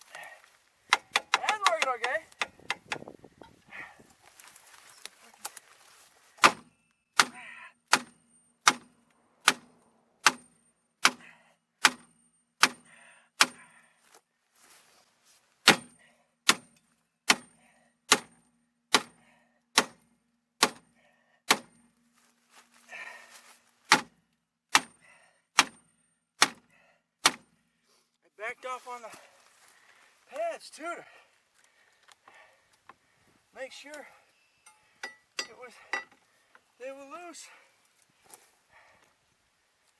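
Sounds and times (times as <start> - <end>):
hammer striking metal: 34.6 - 36.2.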